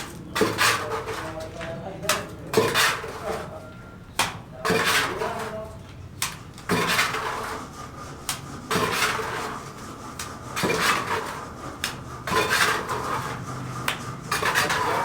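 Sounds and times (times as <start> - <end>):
tool scraping hard material: 0.4 - 1.4, 2.5 - 3.5, 4.6 - 5.7, 6.6 - 15.0.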